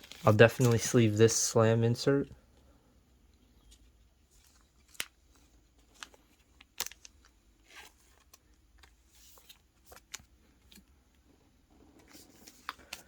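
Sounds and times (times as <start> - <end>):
trading cards rustling: 0.0 - 1.4, 3.7 - 10.9, 11.9 - 13.0.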